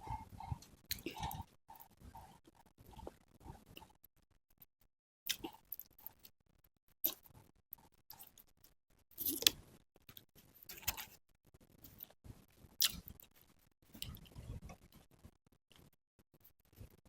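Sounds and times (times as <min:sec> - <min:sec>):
wet chewing: 0:00.0 - 0:04.0, 0:05.3 - 0:06.3, 0:12.8 - 0:13.3.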